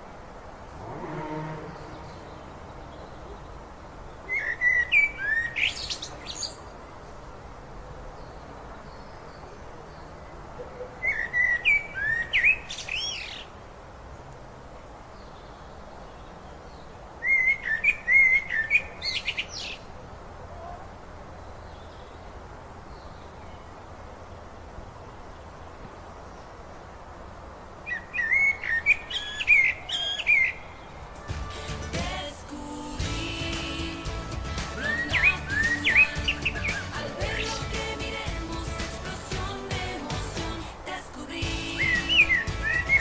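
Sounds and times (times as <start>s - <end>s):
steady background hiss: 0.0s - 10.5s, 11.6s - 43.0s
songbird whistling song: 34.4s - 37.0s, 41.7s - 43.0s.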